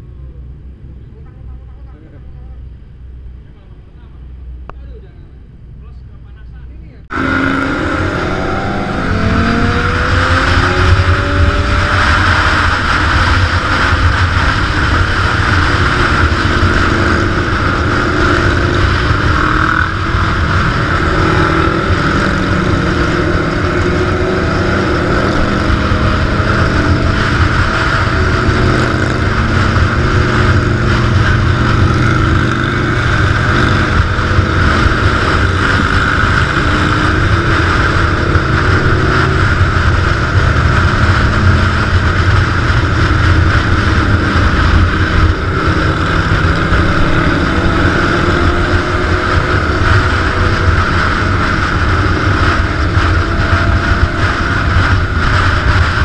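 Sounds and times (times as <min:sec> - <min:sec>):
motorcycle engine accelerating: 0:07.0 - 0:56.0
rushing wind noise: 0:07.1 - 0:56.0.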